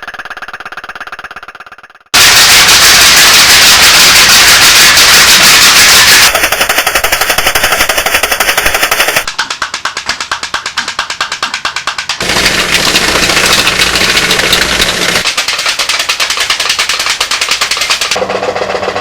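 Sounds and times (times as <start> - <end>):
toy pop-pop boats popping: 6.1 - 18.2.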